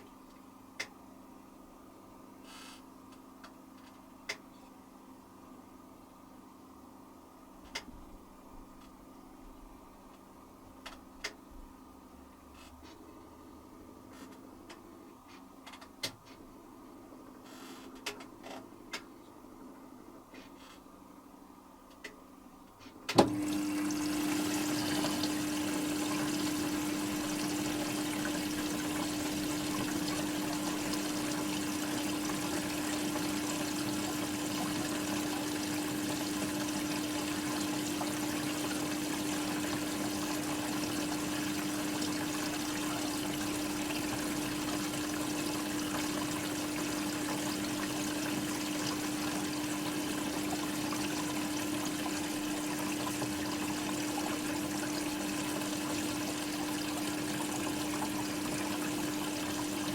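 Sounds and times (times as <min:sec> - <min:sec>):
water running into washing machine: 0:23.1 - 0:59.9
steady hum: 0:23.4 - 0:59.9.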